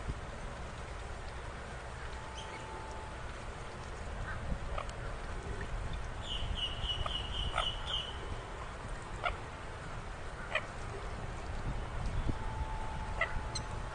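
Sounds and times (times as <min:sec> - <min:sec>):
rail bird calling: 0:06.2 - 0:09.4, 0:12.2 - 0:13.9.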